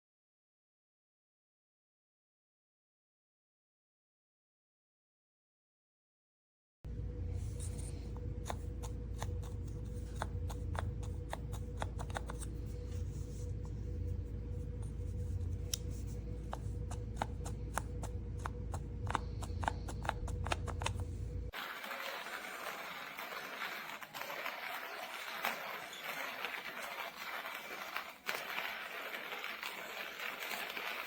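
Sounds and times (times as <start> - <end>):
steady low hum: 6.9 - 21.6
coffee beans cracking in grinder: 21.5 - 31.0.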